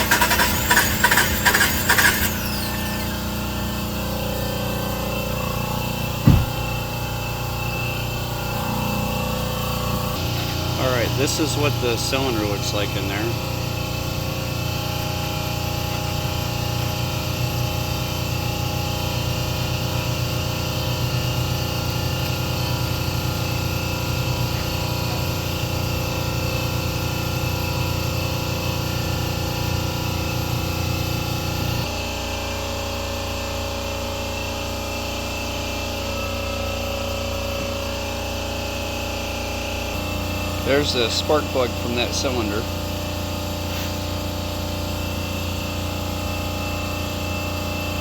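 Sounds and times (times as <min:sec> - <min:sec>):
machine humming: 0:00.0 - 0:12.7
motor running with low pulse: 0:00.0 - 0:48.0.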